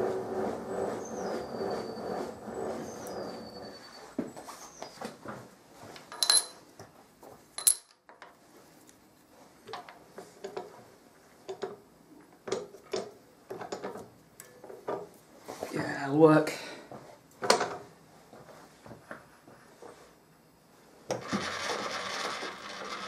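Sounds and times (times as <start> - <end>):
metal tools clinking and knocking: 6.1 - 6.6, 7.6 - 8.0.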